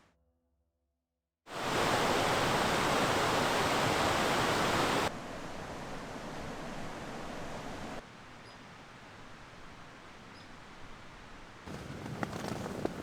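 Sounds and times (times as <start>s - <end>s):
river rapids rushing: 1.5s - 8.0s.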